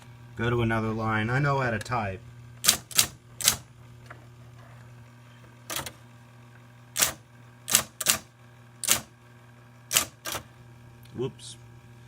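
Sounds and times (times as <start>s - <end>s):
typewriter key strikes: 2.6s - 3.6s, 5.7s - 5.9s, 7.0s - 9.1s, 9.9s - 10.5s
typewriter motor hum: 2.6s - 3.7s, 5.6s - 6.0s, 6.9s - 9.2s, 9.8s - 10.6s.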